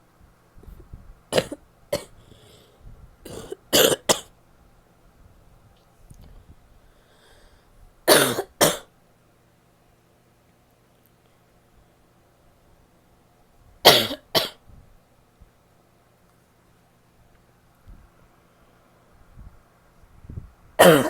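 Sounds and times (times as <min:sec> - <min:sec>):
woman coughing: 0:01.3 - 0:02.2, 0:03.3 - 0:04.3, 0:08.1 - 0:08.9, 0:13.9 - 0:14.6, 0:20.8 - 0:21.0.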